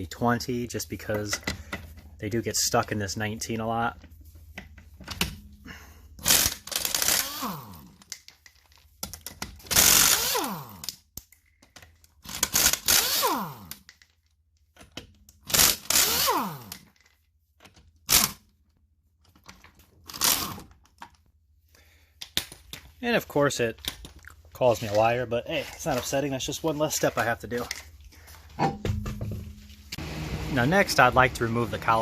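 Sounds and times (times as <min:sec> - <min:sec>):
impact wrench bursts: 0:06.2 - 0:08.0, 0:09.7 - 0:10.9, 0:12.3 - 0:13.8, 0:15.5 - 0:16.9.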